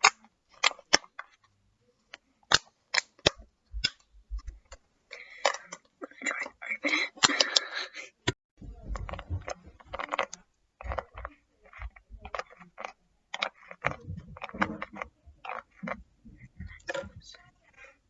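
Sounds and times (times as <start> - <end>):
plastic bottle cap clicks and taps: 2.5 - 4.5
soft low thuds: 3.4 - 4.8, 8.6 - 10.2, 13.9 - 17.6.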